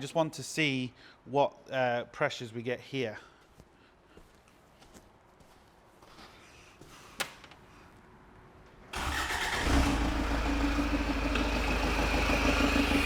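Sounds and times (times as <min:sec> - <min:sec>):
diesel engine cranking and idling: 0:08.9 - 0:13.0.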